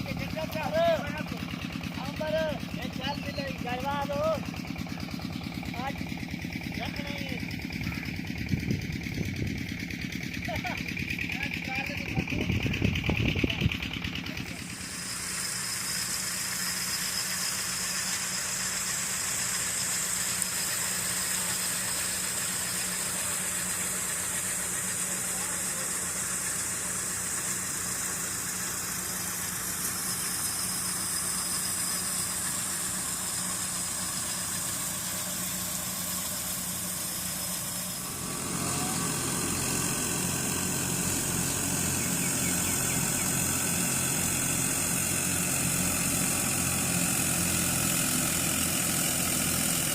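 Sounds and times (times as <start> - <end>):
farm machinery engine running: 0.0 - 49.9
high hiss: 14.7 - 49.6.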